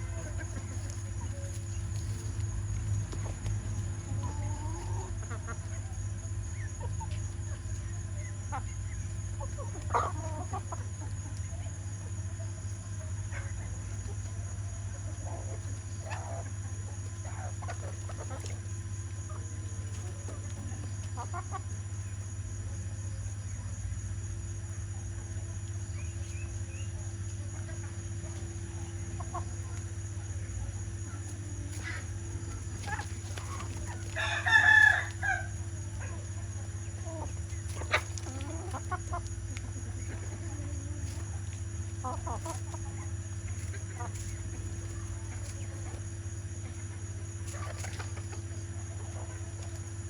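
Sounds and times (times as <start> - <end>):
chickens clucking: 0.0 - 50.0
steady low hum: 0.0 - 50.0
rooster crowing: 33.8 - 35.8.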